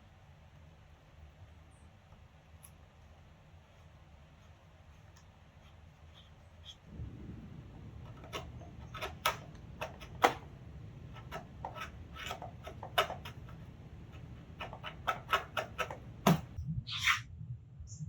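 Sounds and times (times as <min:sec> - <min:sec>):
steady low hum: 0:00.0 - 0:18.0
chisel snapping and scraping wood: 0:08.0 - 0:16.6.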